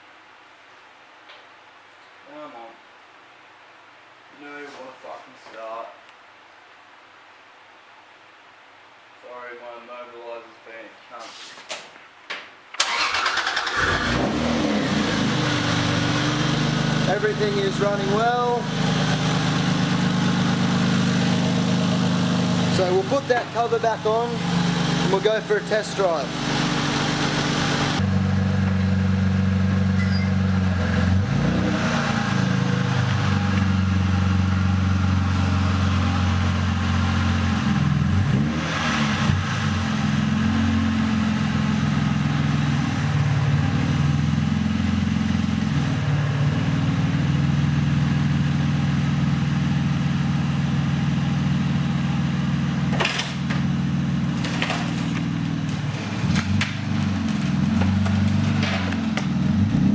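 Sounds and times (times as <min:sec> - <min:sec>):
car engine idling: 0:12.8 - 0:31.3, 0:41.3 - 0:59.8.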